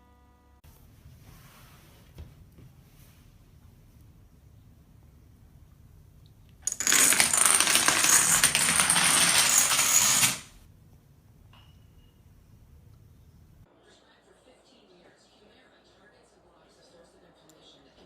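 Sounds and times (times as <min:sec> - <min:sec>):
small hard objects rattling: 0:06.6 - 0:10.5.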